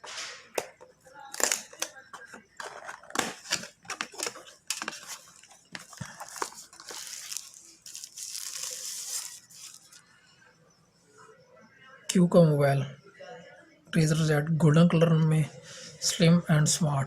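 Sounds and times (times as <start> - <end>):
cardboard and plastic crinkling: 1.3 - 10.0
packaging tearing and sliding: 2.6 - 10.0.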